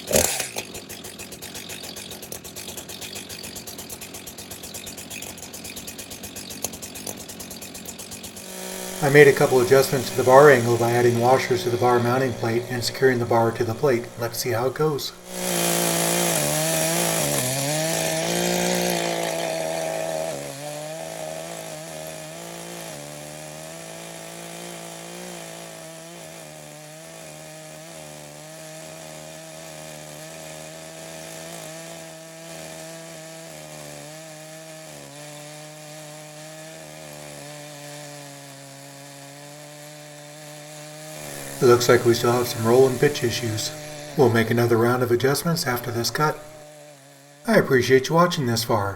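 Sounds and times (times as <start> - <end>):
chainsaw cutting wood: 0.0 - 48.9.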